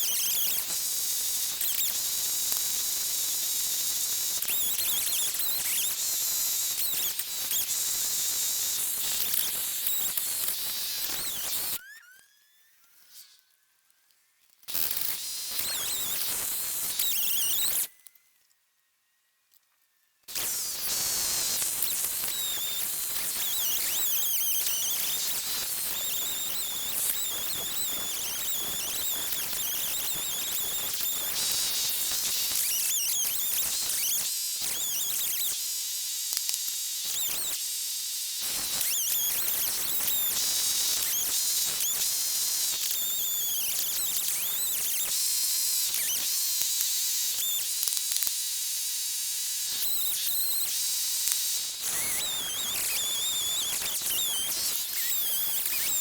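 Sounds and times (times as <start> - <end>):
high-pitched chirping and trills: 11.1 - 14.6.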